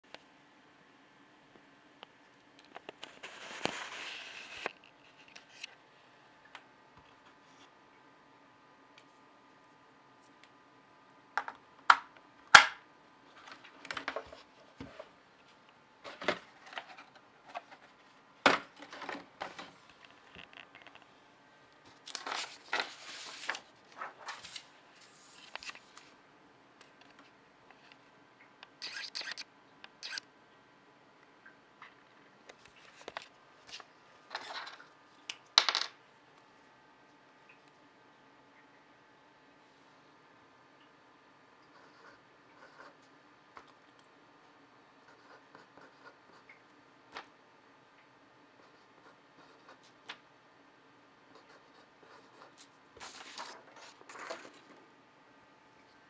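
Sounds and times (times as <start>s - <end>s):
mouse rustling scrapes: 3.0s - 5.8s, 22.1s - 26.1s, 51.5s - 54.8s.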